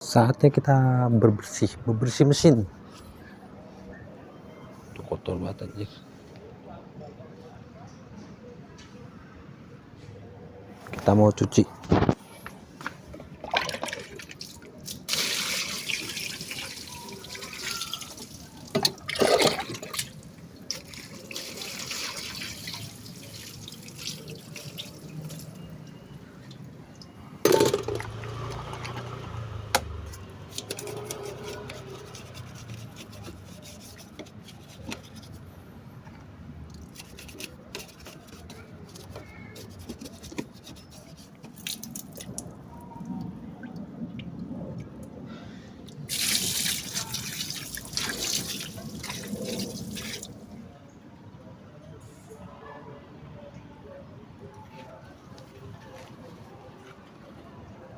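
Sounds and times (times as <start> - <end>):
water dripping: 13.4 - 27.2
water spraying on engine: 14.3 - 26.2, 27.5 - 35.4, 46.0 - 50.4.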